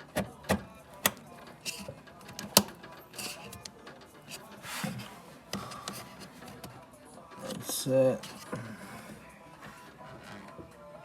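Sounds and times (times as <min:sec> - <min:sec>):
plastic clicks of memory module seating: 0:00.0 - 0:04.4
handling rustles: 0:03.2 - 0:06.8.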